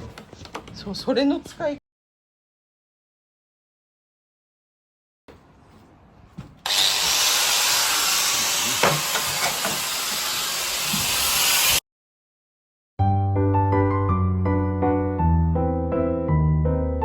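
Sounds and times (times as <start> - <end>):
power tool cutting metal: 6.6 - 11.8.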